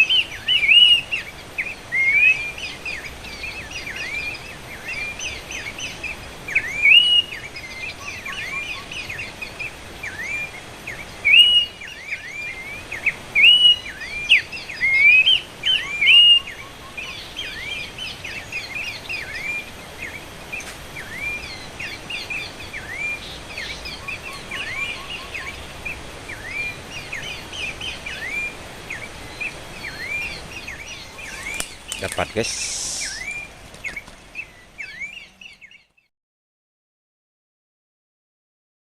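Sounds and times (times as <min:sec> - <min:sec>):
birds calling with whistled notes: 0:00.0 - 0:36.1.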